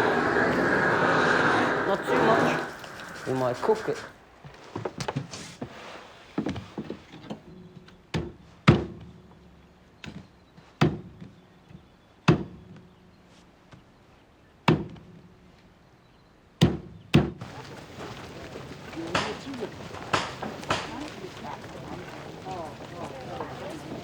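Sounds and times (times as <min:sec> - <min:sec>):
chopping blows: 0:00.0 - 0:04.2, 0:17.4 - 0:24.0.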